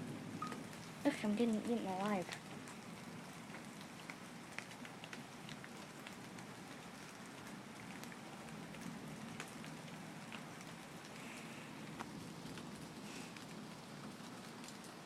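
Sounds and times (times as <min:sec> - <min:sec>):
light rain pattering: 0:00.0 - 0:15.0.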